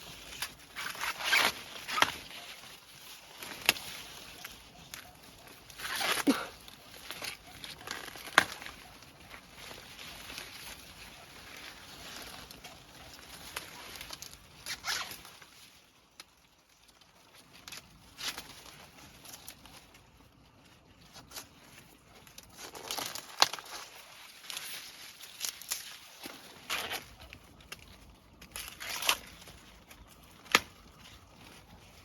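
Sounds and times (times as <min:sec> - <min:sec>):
rustling and crackling: 0:00.0 - 0:32.0.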